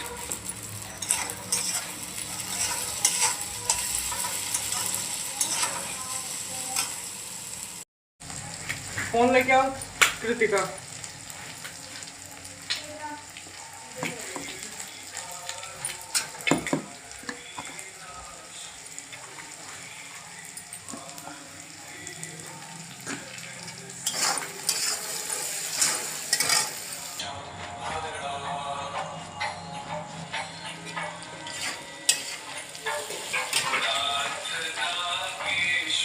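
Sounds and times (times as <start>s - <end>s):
fried rice sizzling in pan: 0.0s - 27.2s, 31.5s - 36.0s
spoon scraping and clinking pan: 0.8s - 6.0s, 24.0s - 26.9s, 30.3s - 35.6s.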